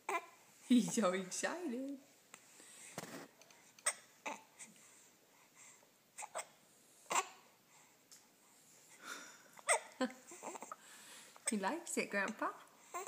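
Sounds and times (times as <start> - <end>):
baby hiccuping: 3.8 - 4.5, 6.2 - 7.4, 9.6 - 10.8.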